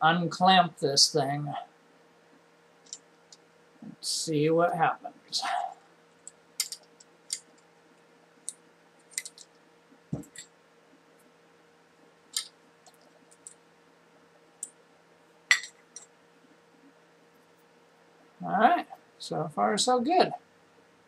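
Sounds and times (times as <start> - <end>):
small clicks and knocks: 6.2 - 7.7, 8.4 - 10.5, 12.3 - 13.6.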